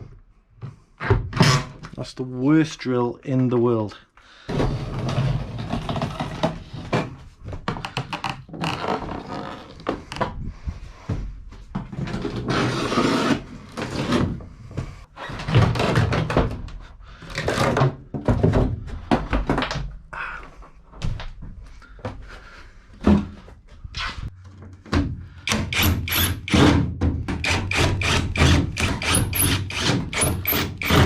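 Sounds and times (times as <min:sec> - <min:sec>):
plywood panels knocking and scraping: 0:13.8 - 0:20.0.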